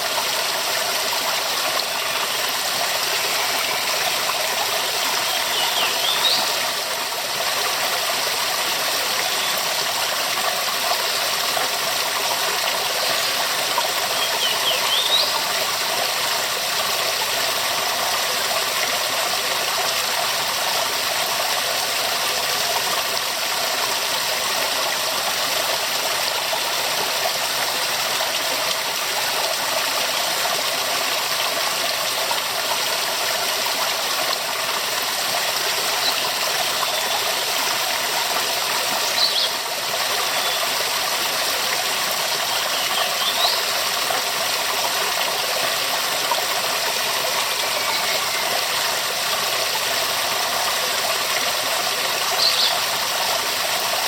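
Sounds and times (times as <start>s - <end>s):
waterfall rushing: 0.0s - 11.4s, 44.4s - 54.0s.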